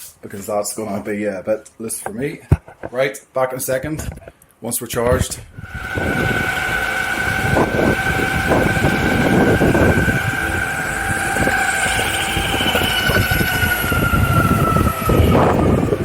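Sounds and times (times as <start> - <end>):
electric motor high whine: 5.6 - 16.0.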